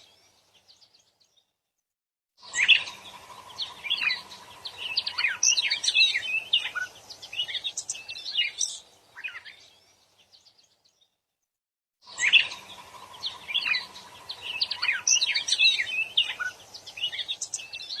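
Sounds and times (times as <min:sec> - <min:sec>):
bird singing chirps and twitters: 0:02.4 - 0:11.1, 0:12.1 - 0:18.0
faint steady hum: 0:02.8 - 0:08.2, 0:12.4 - 0:17.9.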